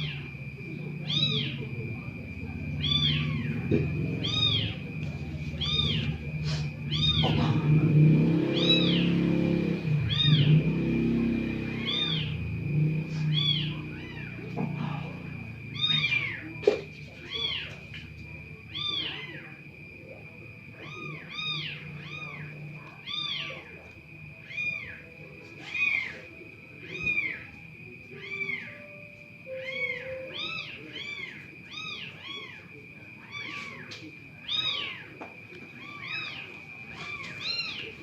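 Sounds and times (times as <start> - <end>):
faint steady high whine: 0.0 - 38.0
small animal high-pitched calls: 4.2 - 4.8, 29.5 - 35.1.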